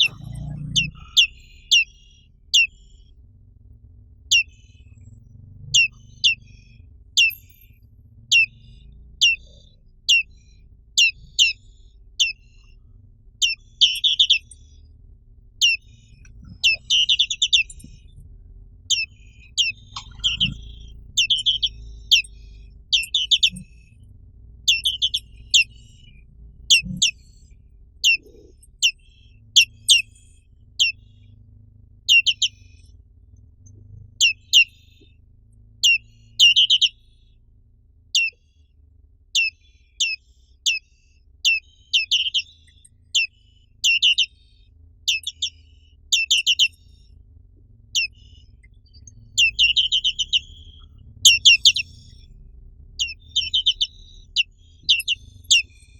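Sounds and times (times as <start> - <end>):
bird chirping high-pitched: 0.0 - 3.0, 4.3 - 4.7, 5.7 - 7.5, 8.3 - 10.4, 11.0 - 12.8, 13.4 - 14.9, 15.6 - 18.2, 18.9 - 24.0, 24.6 - 27.3, 28.0 - 30.2, 30.8 - 31.2, 32.1 - 32.8, 34.2 - 35.1, 35.8 - 37.2, 38.1 - 38.4, 39.3 - 47.1, 47.9 - 52.3, 52.9 - 55.9.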